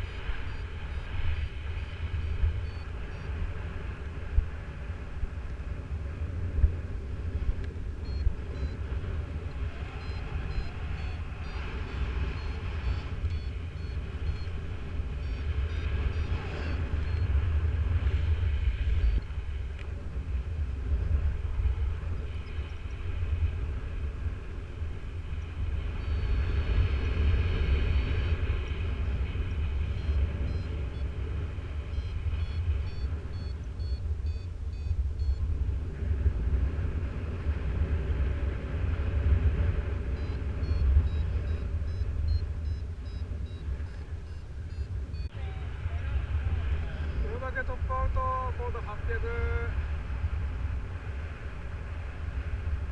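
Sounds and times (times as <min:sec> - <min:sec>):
variometer short high beeps: 0:00.0 - 0:01.6, 0:02.2 - 0:03.3, 0:08.0 - 0:08.8, 0:09.8 - 0:17.3, 0:26.0 - 0:26.7, 0:29.9 - 0:31.1, 0:31.8 - 0:35.4, 0:40.1 - 0:45.7
wind rushing over microphone: 0:00.0 - 0:52.9.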